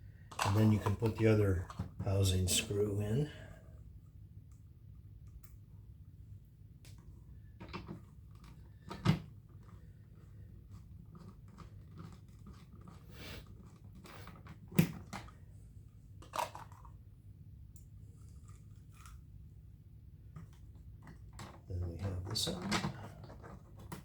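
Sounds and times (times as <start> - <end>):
plastic parts clicking and rattling: 16.2 - 17.0.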